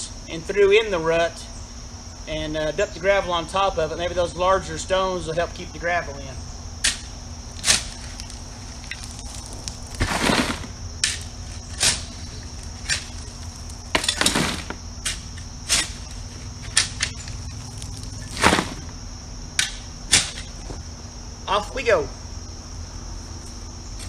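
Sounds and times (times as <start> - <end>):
shovel scraping gravel: 7.5 - 19.0
shovel clinking in gravel: 7.6 - 18.9.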